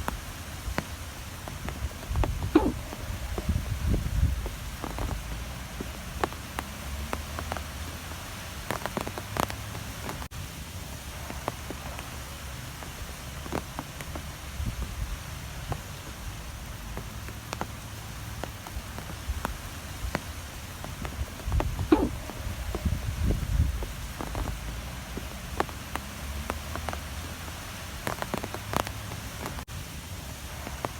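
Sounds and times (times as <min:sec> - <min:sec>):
strong wind rumbling: 0:00.0 - 0:07.1, 0:14.4 - 0:16.9, 0:18.6 - 0:26.4
light ticks and taps: 0:00.0 - 0:10.3, 0:12.8 - 0:15.0, 0:15.6 - 0:29.7.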